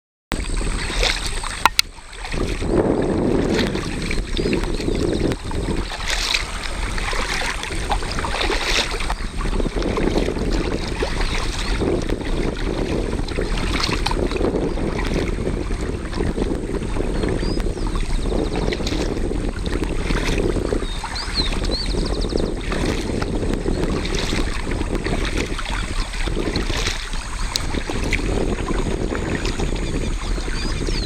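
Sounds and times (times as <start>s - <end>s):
wind on microphone: 0.3s - 31.0s
paddle splashing in water: 0.4s - 31.0s.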